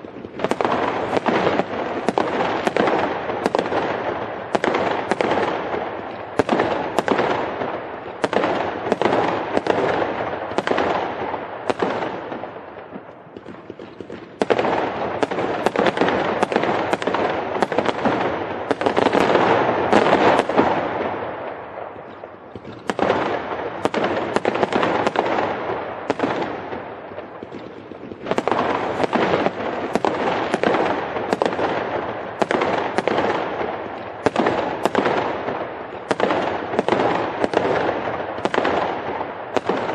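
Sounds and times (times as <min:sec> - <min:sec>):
fireworks bangs: 0:00.0 - 0:39.9
fireworks crackling: 0:00.0 - 0:39.9.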